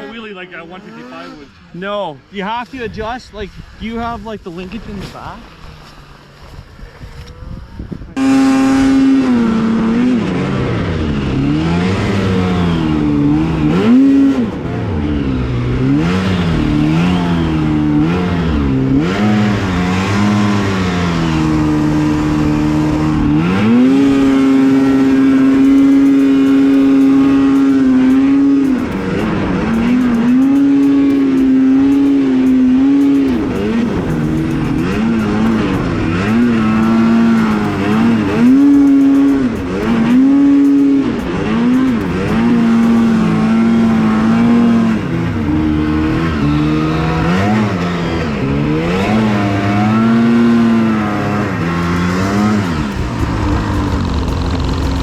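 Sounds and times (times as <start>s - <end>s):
snowmobile engine revving: 0.0s - 6.5s, 8.2s - 55.0s.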